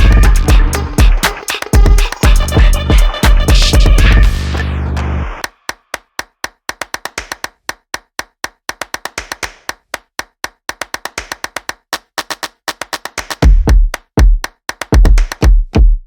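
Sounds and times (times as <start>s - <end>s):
electronic clap-like clicks: 3.1s - 15.5s.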